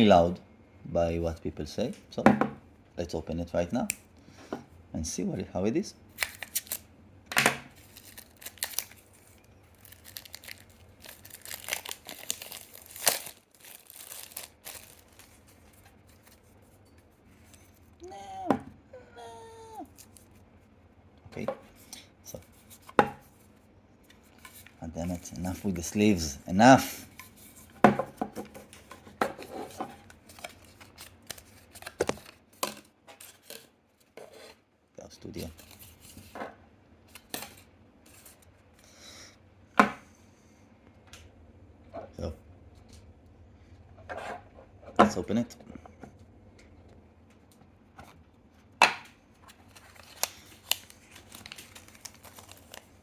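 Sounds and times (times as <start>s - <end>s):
packaging ripping: 6.1s - 6.9s, 7.7s - 15.4s, 49.6s - 53.0s
plastic wrap crinkling: 6.1s - 6.9s, 7.7s - 16.6s, 49.4s - 53.0s.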